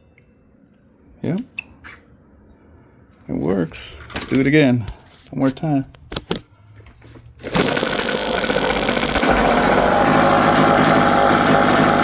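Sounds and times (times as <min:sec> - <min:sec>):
small two-stroke engine running: 0:07.4 - 0:12.0.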